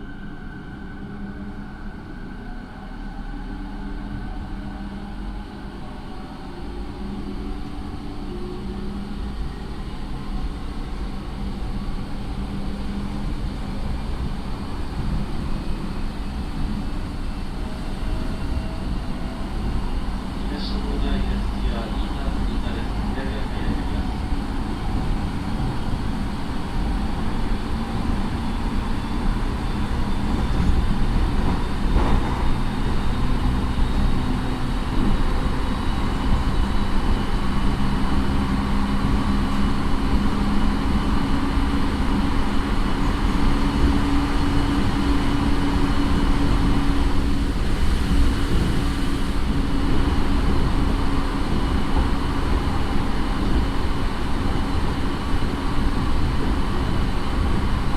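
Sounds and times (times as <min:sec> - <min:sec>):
train wheels rumbling on rail: 0:00.0 - 0:57.9.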